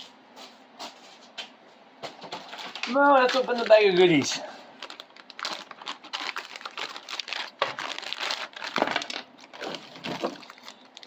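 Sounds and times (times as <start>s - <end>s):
plastic bag crinkling: 2.3s - 11.0s.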